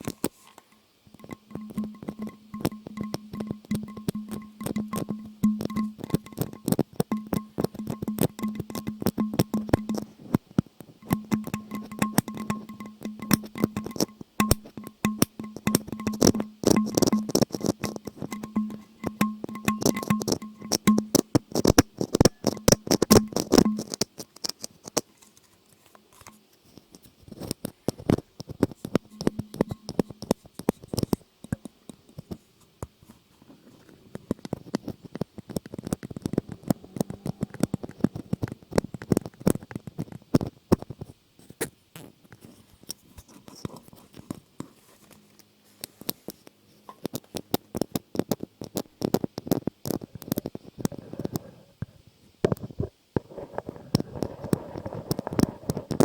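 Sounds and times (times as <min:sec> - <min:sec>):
tapping and scratching clicks: 0:01.1 - 0:25.1, 0:26.1 - 0:32.4, 0:34.1 - 0:41.0.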